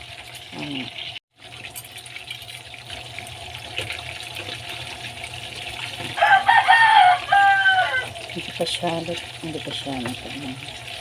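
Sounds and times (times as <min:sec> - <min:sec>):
fish sizzling in hot oil: 0:00.0 - 0:11.0.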